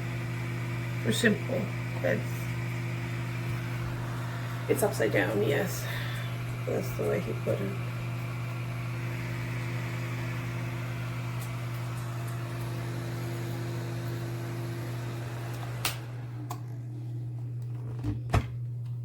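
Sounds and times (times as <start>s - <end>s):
space heater fan humming: 0.0s - 19.0s
heater switch click: 15.5s - 16.6s.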